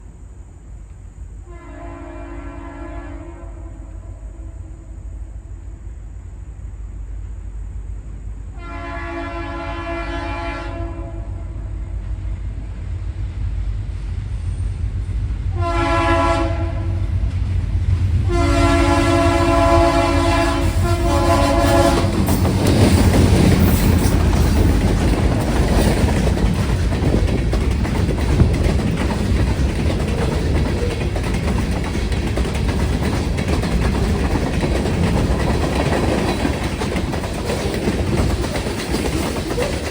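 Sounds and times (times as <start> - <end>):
train engine rumble: 0.0 - 39.9
locomotive air horn blasts: 1.4 - 5.1, 8.5 - 11.8, 15.5 - 17.0, 18.3 - 22.2
wheels clacking over rail joints: 19.0 - 39.9.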